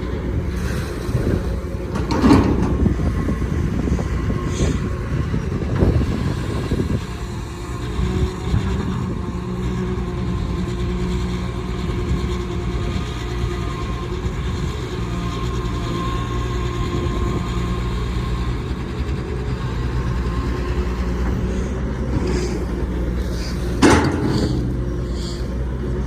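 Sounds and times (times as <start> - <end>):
excavator diesel engine running: 0.0 - 26.0
metal clanks and scrapes: 1.9 - 3.0, 22.0 - 25.5.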